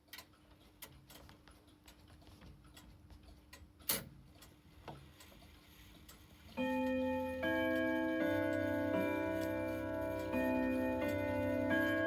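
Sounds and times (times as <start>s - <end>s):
clock ticking softly: 0.0s - 12.0s
loud clock click: 3.6s - 4.2s, 6.6s - 12.0s.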